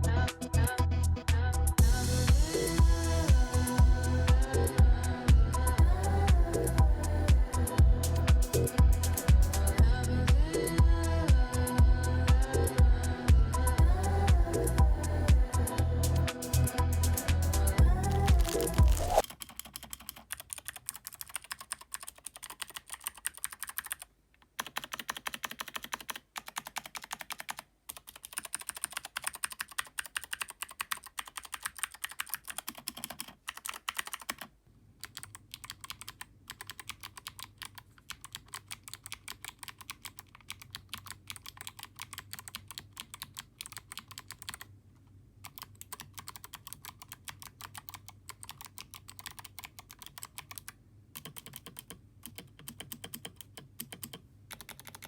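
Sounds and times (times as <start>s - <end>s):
typing on mechanical keyboard: 18.1s - 44.7s, 45.4s - 55.0s.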